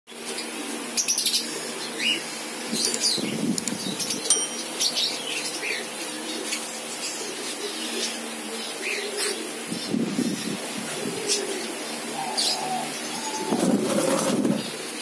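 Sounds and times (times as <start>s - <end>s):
birds chirping: 0.3s - 15.0s
wings fluttering: 13.4s - 14.8s.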